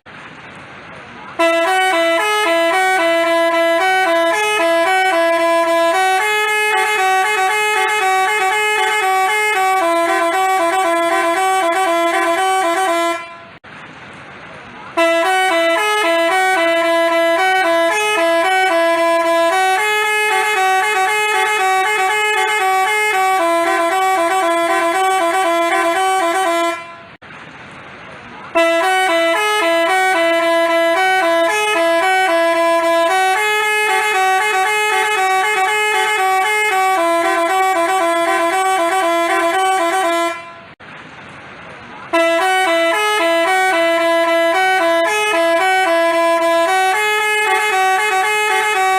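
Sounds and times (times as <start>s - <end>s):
multi-note bus horn melody: 1.3s - 13.7s, 14.9s - 27.2s, 28.5s - 40.8s, 42.1s - 48.9s.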